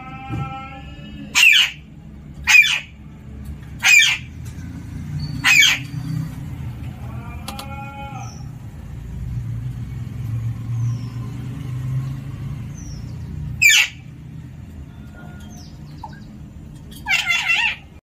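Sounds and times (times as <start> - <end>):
parrot screeching: 0.1 - 3.0, 3.8 - 4.4, 5.2 - 6.1, 13.6 - 14.1, 16.9 - 18.0.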